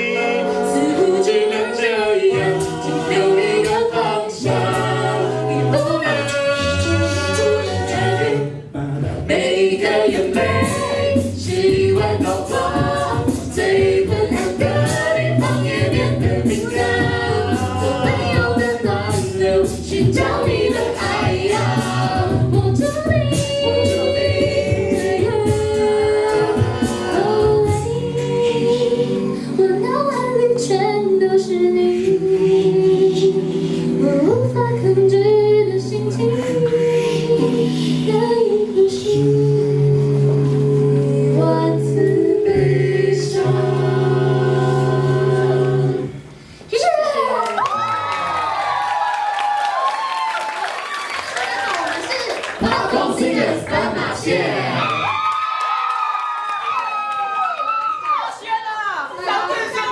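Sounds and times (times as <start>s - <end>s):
vocal percussion beat: 0.0s - 29.0s, 51.0s - 55.4s
a cappella group singing: 0.0s - 46.8s, 52.5s - 55.2s, 59.1s - 59.9s.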